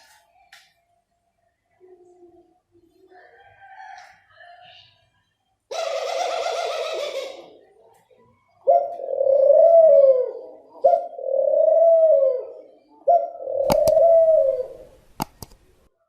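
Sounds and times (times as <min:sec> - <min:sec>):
dove cooing: 0:05.7 - 0:15.1
sharp clicks: 0:13.6 - 0:14.1, 0:15.0 - 0:15.7.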